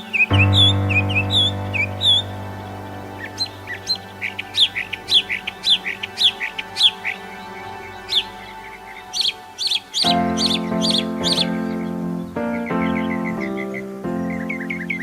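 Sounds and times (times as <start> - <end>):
small bird chirping: 0.0 - 7.3, 7.9 - 15.0
soft background music chords: 0.0 - 15.0.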